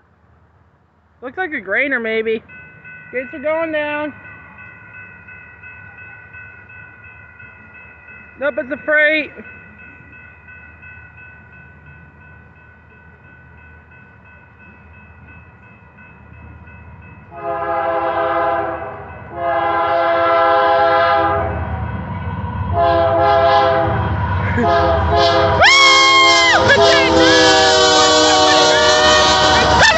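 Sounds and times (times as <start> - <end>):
train rumble: 0.0 - 29.9
crossing signal bell ringing: 1.5 - 20.0, 24.2 - 29.9
locomotive air horn blasts: 17.3 - 21.7, 22.8 - 29.9.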